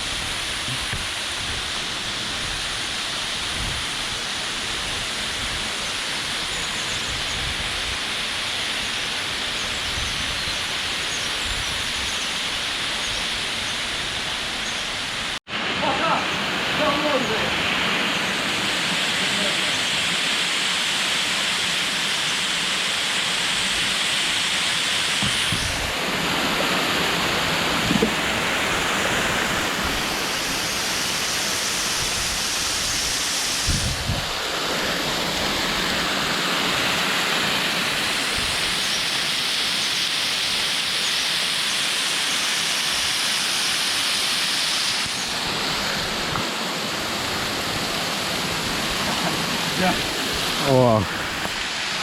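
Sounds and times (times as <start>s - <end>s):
waterfall rushing: 0.0s - 52.0s
dull knocks: 27.8s - 28.2s.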